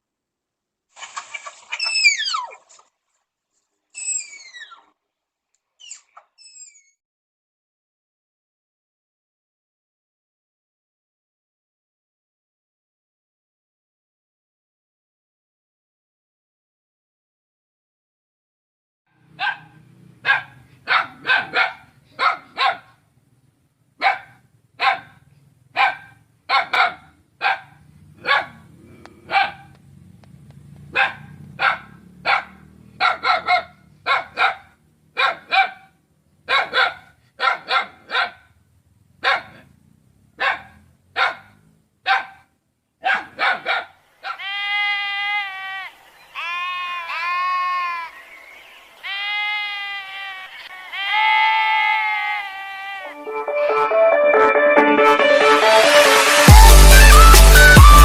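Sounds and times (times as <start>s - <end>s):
dog barking: 19.3s - 23.0s, 24.0s - 29.7s, 30.9s - 38.5s, 39.2s - 39.8s, 40.4s - 44.4s
sheep bleating: 44.2s - 48.2s, 49.0s - 53.2s.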